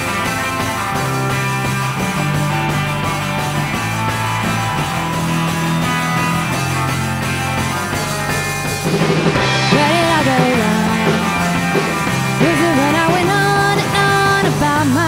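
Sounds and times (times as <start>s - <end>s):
rock band playing: 0.0s - 15.0s
lead singer singing: 9.6s - 15.0s.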